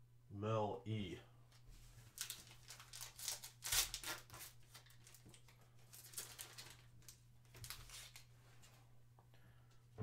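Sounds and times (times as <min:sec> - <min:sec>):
trading cards rustling and scraping: 0:01.8 - 0:08.8.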